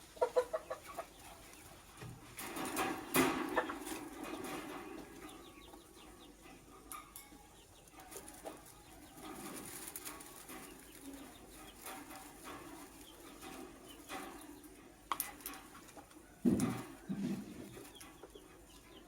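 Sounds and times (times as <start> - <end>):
murmur of bird calls: 0.0 - 19.0
sharp clicks and rustles: 7.9 - 18.2.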